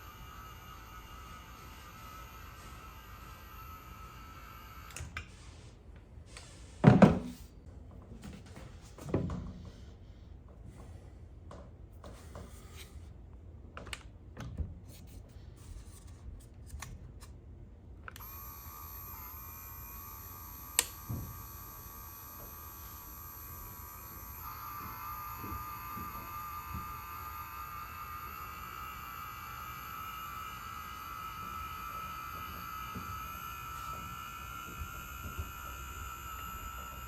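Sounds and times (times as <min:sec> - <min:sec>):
electric motor whining: 0:00.0 - 0:05.0, 0:18.2 - 0:37.0.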